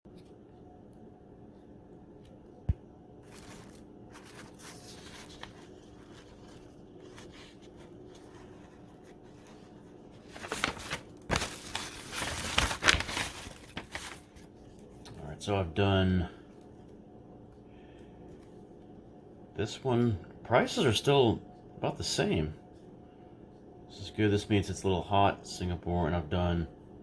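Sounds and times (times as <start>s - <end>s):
packaging crinkling and rustling: 3.2s - 15.2s.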